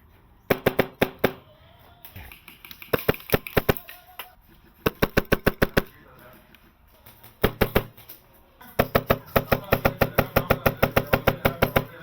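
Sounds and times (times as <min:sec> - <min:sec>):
airsoft rifle firing: 0:00.5 - 0:01.5, 0:02.8 - 0:03.9, 0:04.8 - 0:06.0, 0:07.4 - 0:08.0, 0:08.8 - 0:12.0.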